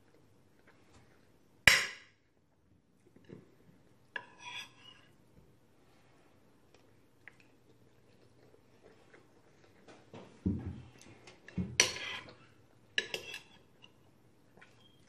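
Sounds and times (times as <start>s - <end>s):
utensil scraping on a plate: 4.2s - 5.2s, 11.7s - 14.0s.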